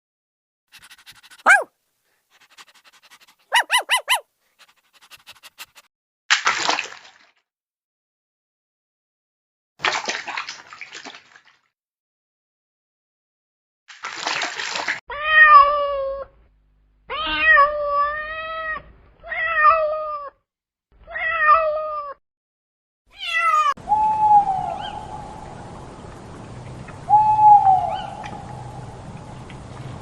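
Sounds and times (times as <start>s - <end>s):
cat meowing: 1.5s - 1.7s, 3.5s - 4.2s, 15.1s - 16.3s, 17.1s - 20.3s, 21.0s - 22.2s, 23.1s - 23.7s.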